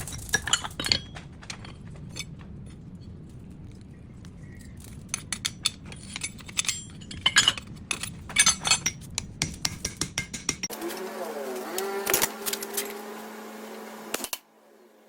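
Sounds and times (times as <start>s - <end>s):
metal-on-metal clinks and taps: 4.7s - 10.7s.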